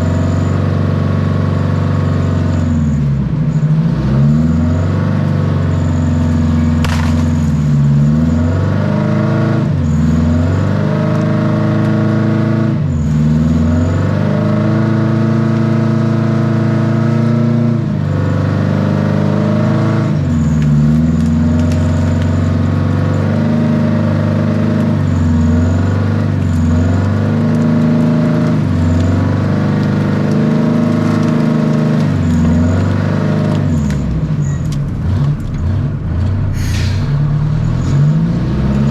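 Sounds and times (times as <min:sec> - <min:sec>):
diesel engine working hard: 0:00.0 - 0:38.9
clatter: 0:05.7 - 0:08.1, 0:20.1 - 0:22.8, 0:24.3 - 0:38.9.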